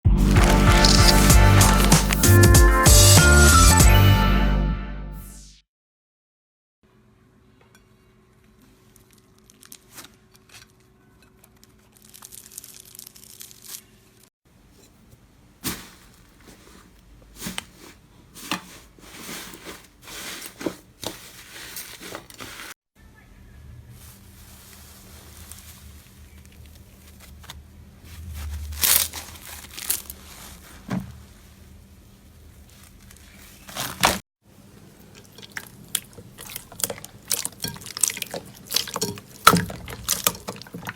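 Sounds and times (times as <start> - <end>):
slime squeezed wet crackling: 0.3 - 2.4, 35.0 - 40.9.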